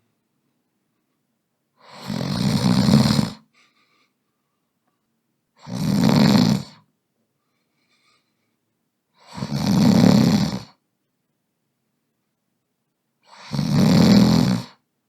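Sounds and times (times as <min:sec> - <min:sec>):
man snoring: 0:01.8 - 0:03.4, 0:05.6 - 0:06.8, 0:09.2 - 0:10.8, 0:13.3 - 0:14.8.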